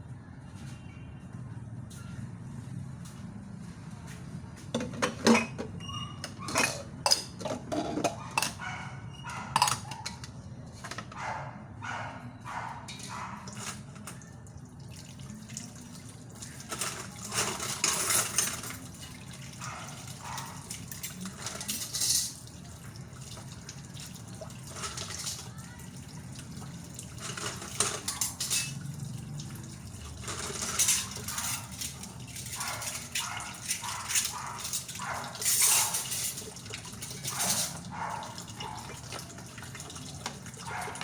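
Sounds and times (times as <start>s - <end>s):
dishes clinking in a sink: 4.6s - 11.2s, 16.4s - 41.0s.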